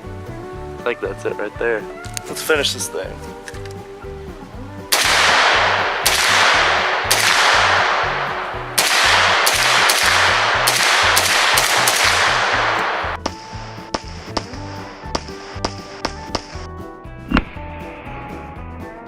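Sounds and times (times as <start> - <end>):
rifle shots echoing: 4.9 - 16.6.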